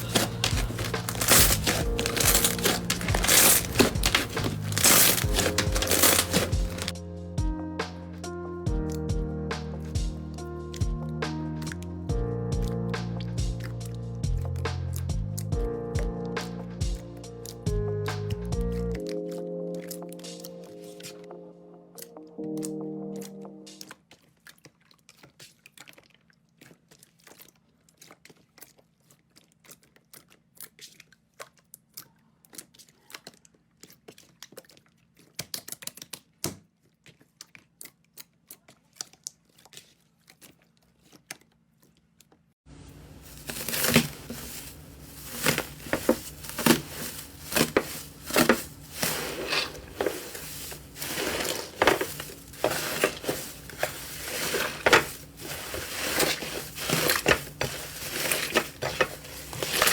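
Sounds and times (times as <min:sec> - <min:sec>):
slime crackling and popping: 0:00.0 - 0:06.9, 0:22.0 - 0:41.6, 0:43.2 - 0:59.9.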